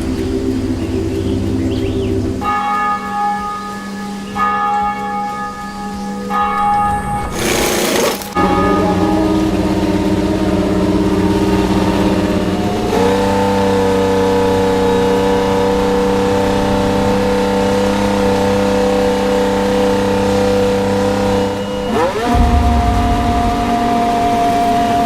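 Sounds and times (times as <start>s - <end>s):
race car engine running: 7.4s - 25.0s.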